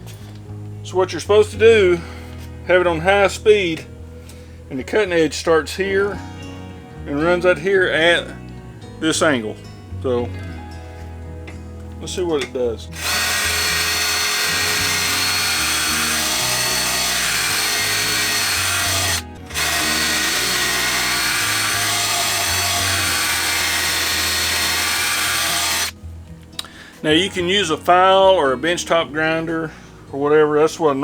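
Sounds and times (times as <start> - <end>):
electric drill grinding metal blade: 12.5 - 26.0.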